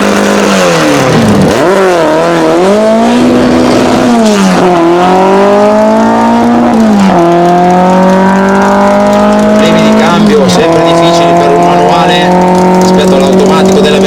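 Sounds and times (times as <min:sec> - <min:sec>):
car engine revving at full throttle: 0:00.0 - 0:14.0.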